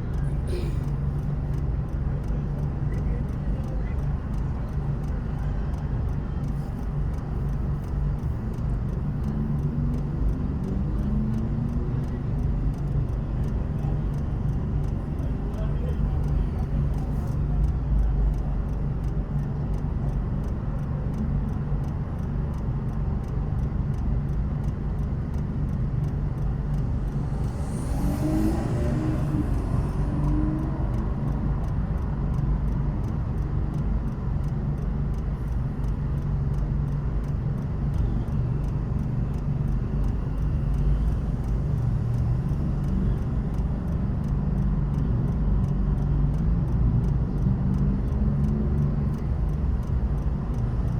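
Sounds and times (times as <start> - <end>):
car road and engine rumble: 0.0 - 50.9.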